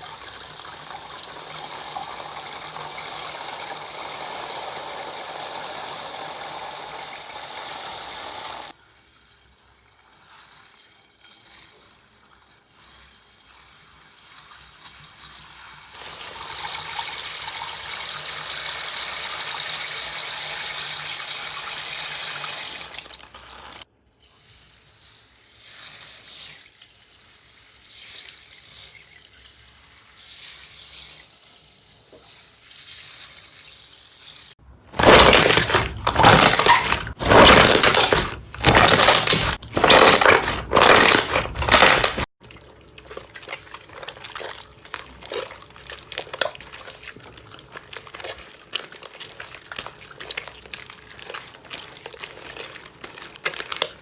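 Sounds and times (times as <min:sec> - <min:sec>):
wet squishy slime: 0:35.0 - 0:54.0.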